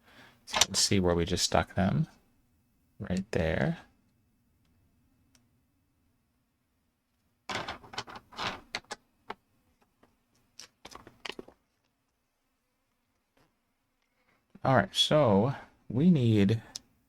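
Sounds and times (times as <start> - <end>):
plastic bricks clicking and clattering: 7.5 - 9.4.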